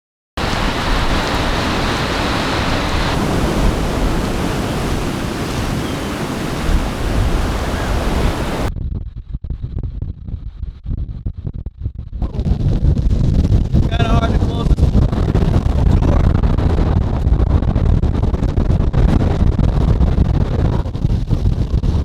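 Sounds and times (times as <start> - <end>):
strong wind rushing: 0.4 - 8.7
wind gusts buffeting microphone: 0.4 - 8.7, 13.0 - 22.0.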